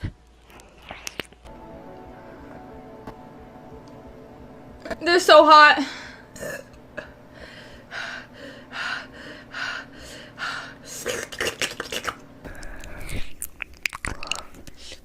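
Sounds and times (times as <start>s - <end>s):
person breathing: 7.2s - 11.1s, 12.4s - 13.4s.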